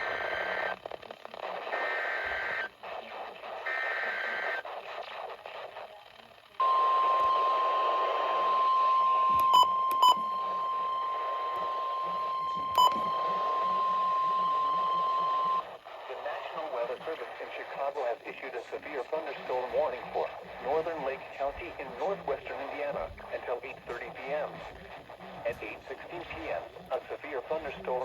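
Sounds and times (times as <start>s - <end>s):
radio signal hiss: 0.0s - 28.0s
steady alarm tone: 6.6s - 15.7s.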